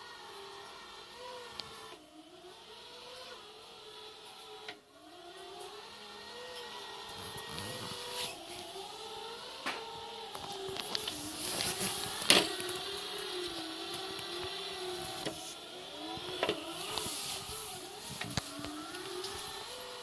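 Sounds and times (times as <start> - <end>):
robot cleaner motor whine: 0.0 - 20.0.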